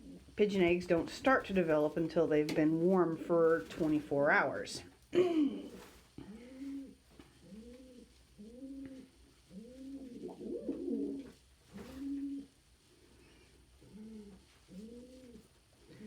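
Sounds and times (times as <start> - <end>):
pigeons cooing: 5.6 - 12.6, 13.8 - 16.0.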